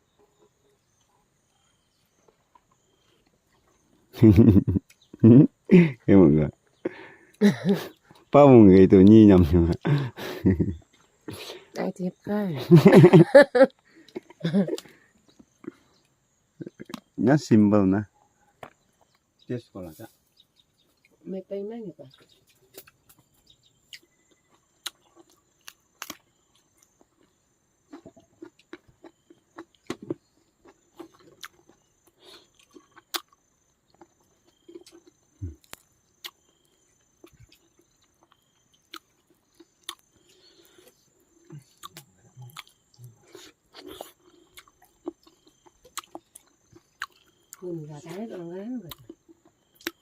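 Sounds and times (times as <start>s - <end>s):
people chewing: 9.0s - 11.8s, 12.7s - 17.2s, 22.2s - 48.2s, 48.9s - 50.0s
small crunches and clicks: 24.0s - 40.9s.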